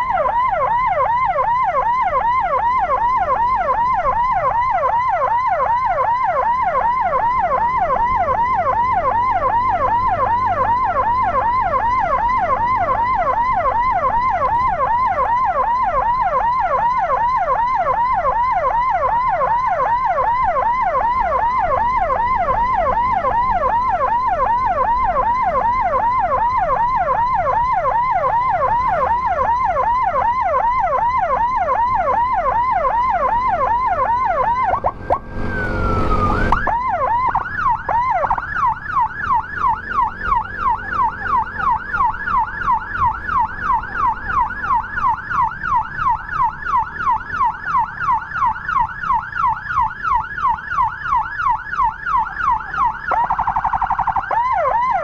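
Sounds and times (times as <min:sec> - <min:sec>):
electronic siren yelping: 0:00.0 - 0:55.0.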